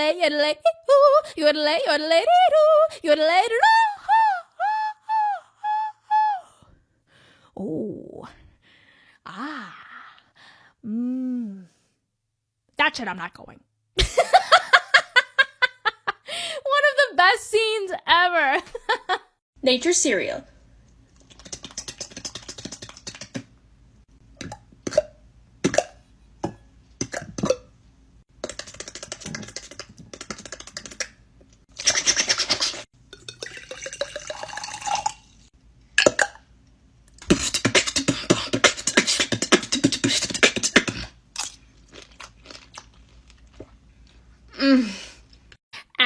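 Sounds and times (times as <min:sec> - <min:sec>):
mouth clicks and pops: 0:21.2 - 0:23.5, 0:24.4 - 0:27.7, 0:28.4 - 0:31.2, 0:37.1 - 0:41.1
vocal hissing crackling bursts: 0:37.2 - 0:41.2.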